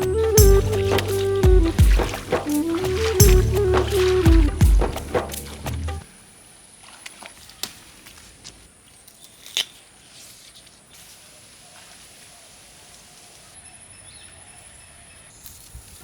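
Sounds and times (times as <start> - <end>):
background music: 0.0 - 6.0.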